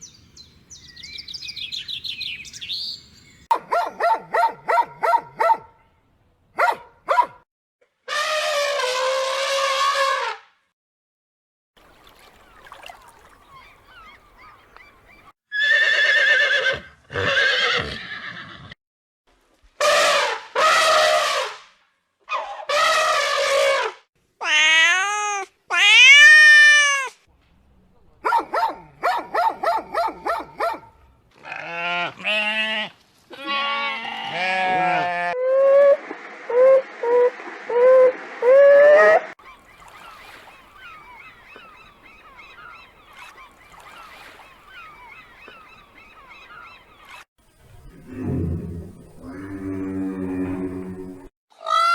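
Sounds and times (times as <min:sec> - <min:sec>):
farm animal bleating cries: 0:31.4 - 0:35.4.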